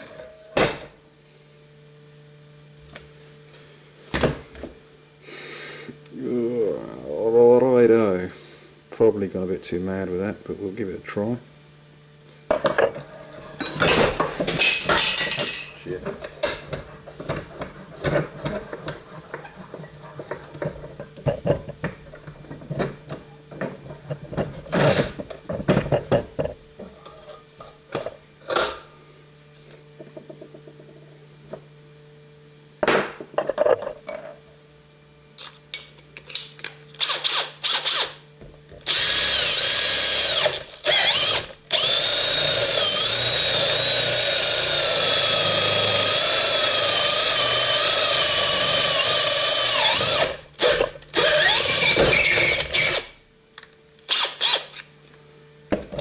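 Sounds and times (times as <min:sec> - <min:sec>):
power drill boring into wood: 0:37.0 - 0:38.2, 0:38.8 - 0:53.1, 0:54.1 - 0:54.8.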